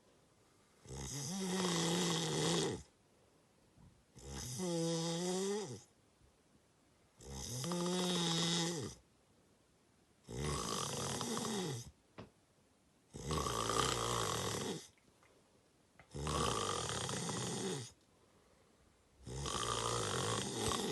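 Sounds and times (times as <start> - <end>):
person snoring heavily: 0.8 - 2.9, 4.2 - 5.8, 7.2 - 9.0, 10.3 - 11.9, 13.1 - 14.9, 16.1 - 18.0, 19.2 - 20.9.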